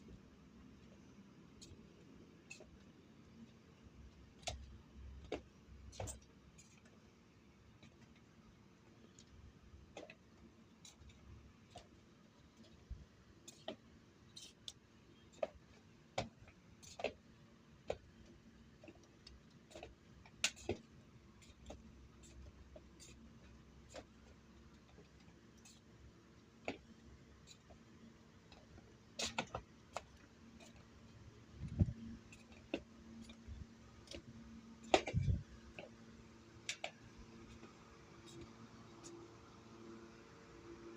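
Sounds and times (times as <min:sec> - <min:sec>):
sharp clicks and light knocks: 0:04.4 - 0:07.0, 0:17.8 - 0:25.8, 0:31.6 - 0:36.0, 0:36.6 - 0:39.2.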